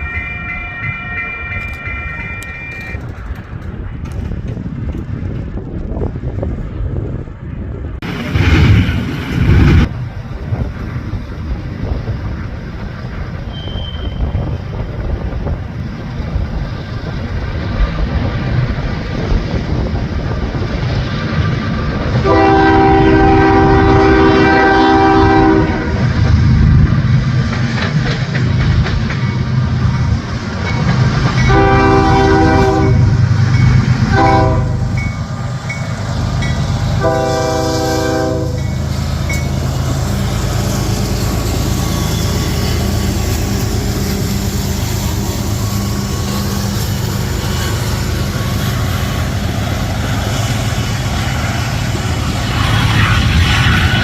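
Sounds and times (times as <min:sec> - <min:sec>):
train rumble: 0:00.0 - 0:54.0
locomotive air horn blasts: 0:22.2 - 0:26.0, 0:31.4 - 0:33.1, 0:34.1 - 0:35.0, 0:37.0 - 0:38.8.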